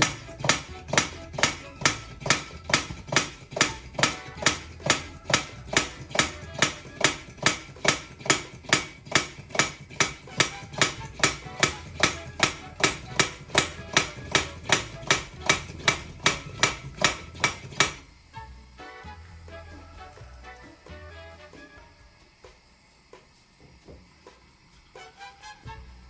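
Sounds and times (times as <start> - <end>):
background music: 0.0 - 8.4, 10.1 - 22.5, 25.0 - 26.0
sharp evenly spaced knocks: 0.0 - 18.1.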